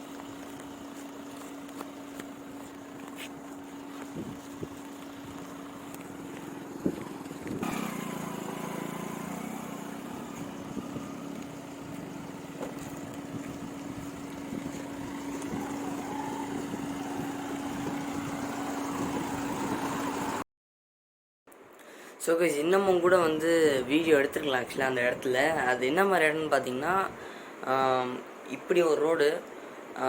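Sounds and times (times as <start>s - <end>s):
car engine running: 0.0s - 20.4s.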